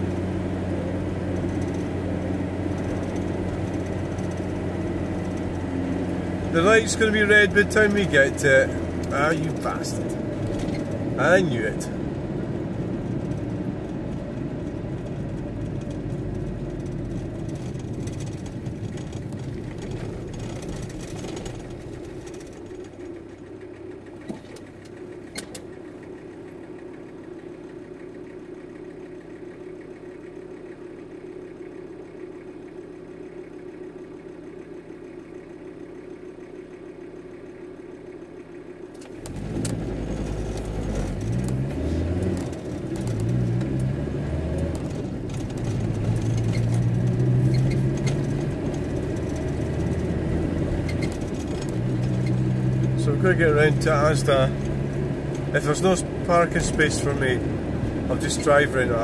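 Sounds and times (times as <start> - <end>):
diesel van engine: 0.0 - 59.0.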